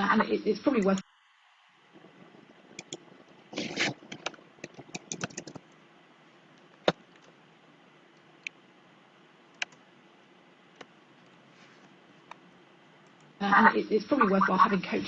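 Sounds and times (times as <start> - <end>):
computer keyboard typing: 2.7 - 3.1, 3.7 - 5.8, 9.5 - 9.8.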